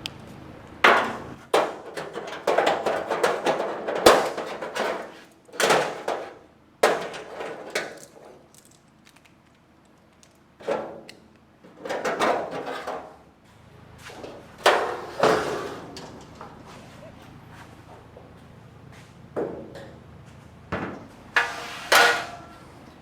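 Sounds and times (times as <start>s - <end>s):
scraping and rustling: 11.7s - 19.3s, 20.2s - 23.0s.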